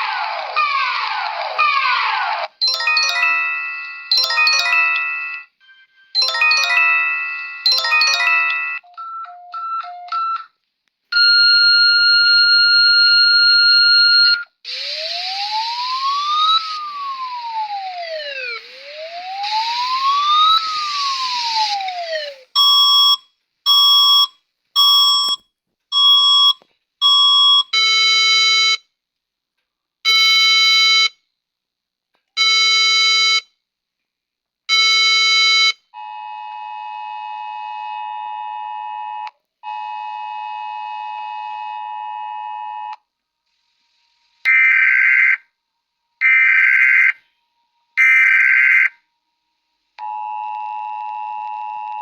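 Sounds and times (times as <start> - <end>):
siren wailing: 14.7 - 22.5
steady alarm tone: 14.7 - 23.2.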